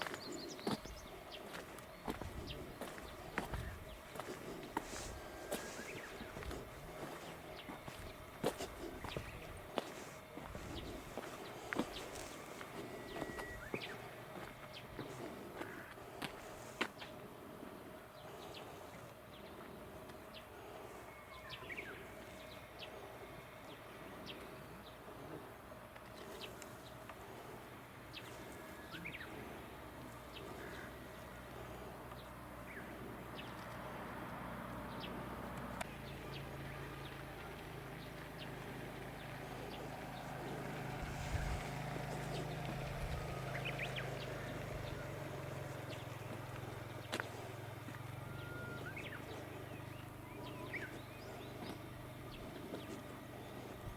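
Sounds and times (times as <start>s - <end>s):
low steady hum: 0.0s - 53.9s
faint bird chirps: 11.9s - 14.1s.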